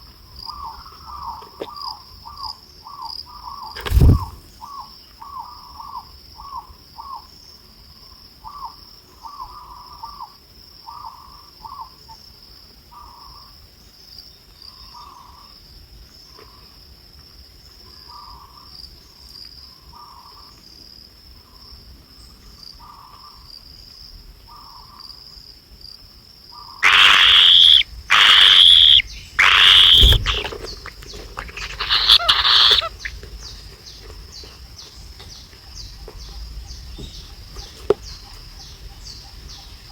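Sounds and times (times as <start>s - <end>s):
birds calling: 3.3s - 4.8s, 26.6s - 39.9s.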